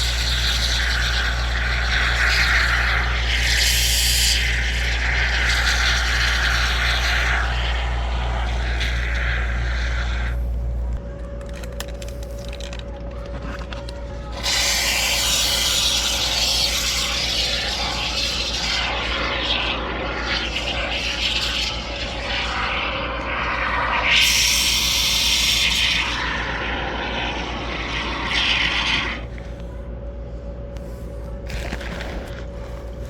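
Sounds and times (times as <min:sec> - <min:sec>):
spray foam can hissing: 0:14.4 - 0:19.3.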